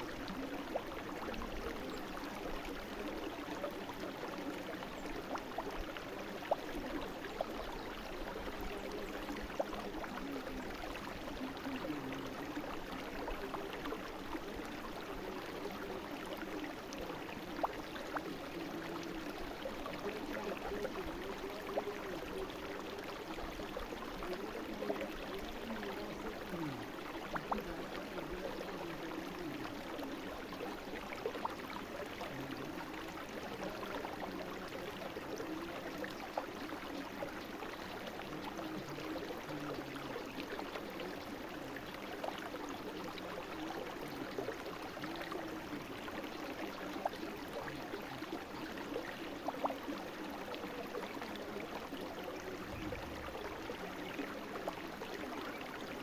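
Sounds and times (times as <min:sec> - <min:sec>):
brook babbling: 0:00.0 - 0:56.0.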